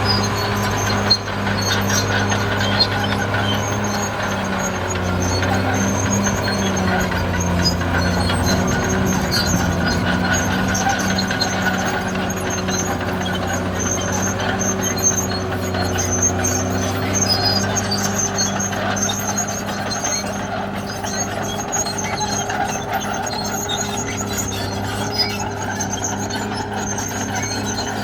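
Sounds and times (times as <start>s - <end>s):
bulldozer diesel engine running: 0.0s - 28.0s.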